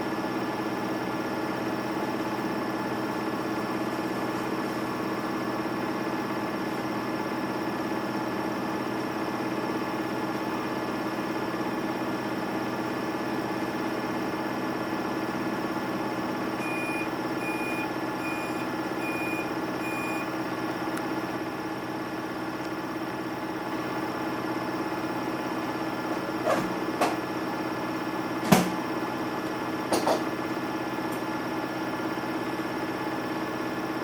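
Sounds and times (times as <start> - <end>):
washing machine motor hum: 0.0 - 34.0
short high beeps: 16.6 - 20.3.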